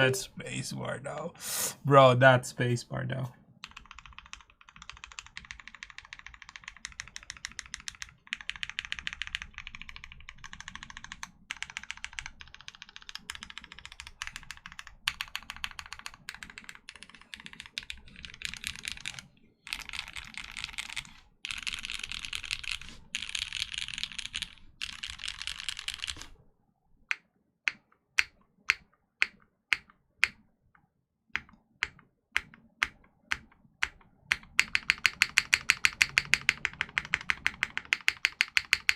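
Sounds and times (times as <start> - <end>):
fast typing on mechanical keyboard: 3.6 - 26.3, 31.4 - 38.9.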